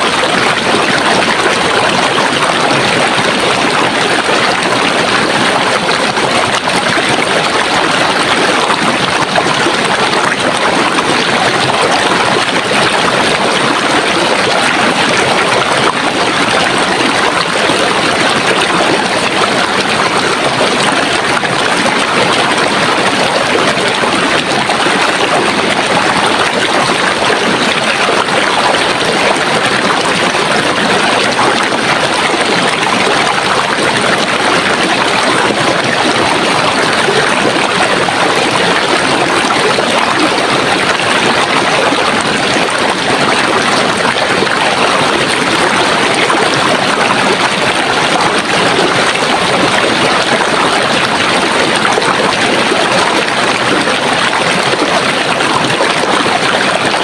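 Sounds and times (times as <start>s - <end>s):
stream water rushing: 0.0s - 57.0s.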